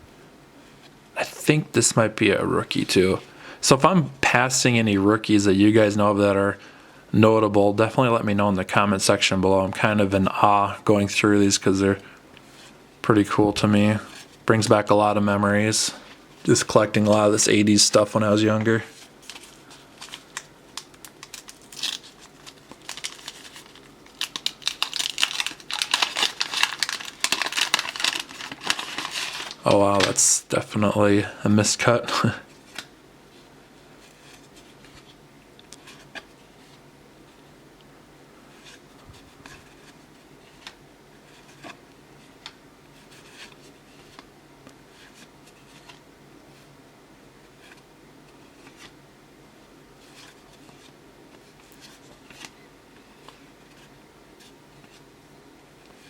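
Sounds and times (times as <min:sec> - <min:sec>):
low room hum: 0:00.0 - 0:56.0
wax paper crinkling: 0:18.7 - 0:30.3.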